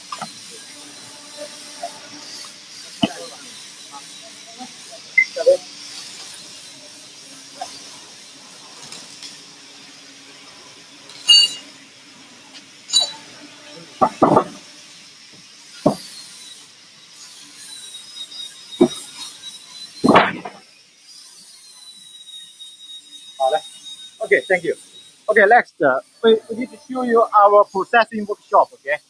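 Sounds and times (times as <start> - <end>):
machine hum: 0.0 - 16.0, 23.2 - 29.0
ringing metallic clinks: 11.2 - 11.7, 12.9 - 13.2.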